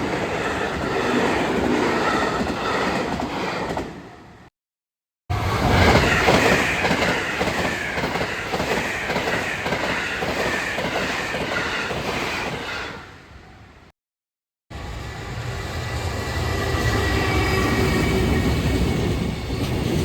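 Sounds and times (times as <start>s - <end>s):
train wheels clicking on rails: 5.7s - 12.7s.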